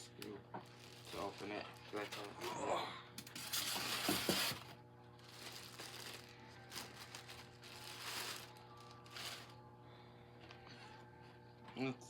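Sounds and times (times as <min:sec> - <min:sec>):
rustling handling noise: 0:00.6 - 0:02.6, 0:03.4 - 0:09.6
background music: 0:05.3 - 0:12.0.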